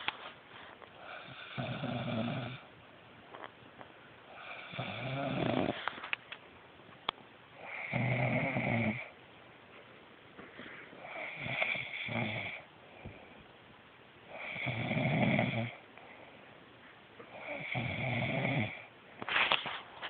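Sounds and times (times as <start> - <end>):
person snoring: 1.0 - 2.7, 4.4 - 5.8, 7.6 - 9.1, 11.0 - 12.6, 14.3 - 15.8, 17.4 - 18.9.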